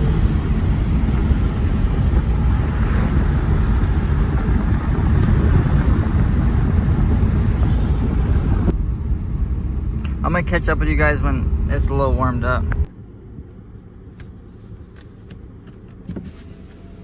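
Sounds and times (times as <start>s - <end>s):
car driving low rumble: 0.0s - 17.0s.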